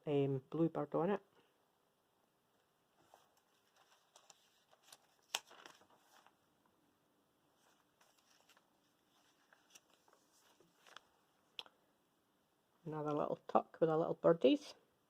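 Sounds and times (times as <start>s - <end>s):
pages turning: 3.0s - 6.4s, 7.6s - 11.2s
paper rustling: 3.0s - 6.4s, 7.6s - 11.2s.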